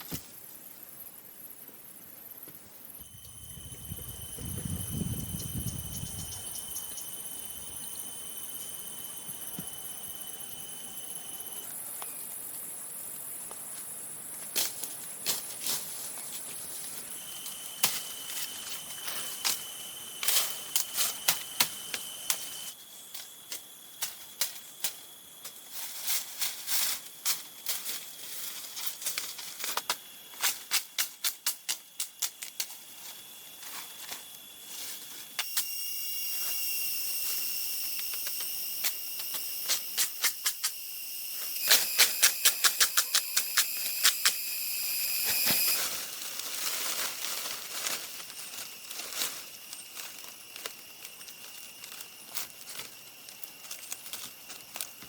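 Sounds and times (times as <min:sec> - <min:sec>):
high-pitched drone: 0:03.0 - 0:12.6, 0:35.4 - 0:52.9.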